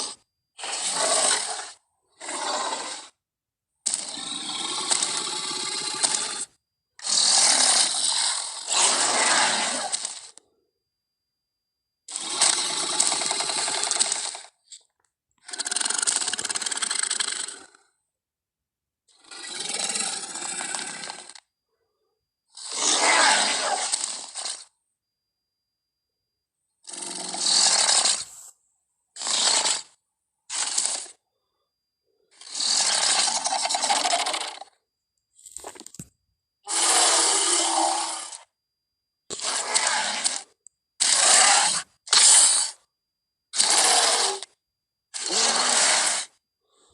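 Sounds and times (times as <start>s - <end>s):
rasping pulsing creature growls: 0.0s - 3.2s, 3.9s - 10.3s, 12.1s - 14.5s, 15.4s - 17.9s, 19.1s - 21.4s, 22.6s - 24.6s, 26.8s - 28.4s, 32.3s - 34.7s, 45.2s - 46.4s
clicking rattle: 12.2s - 17.7s.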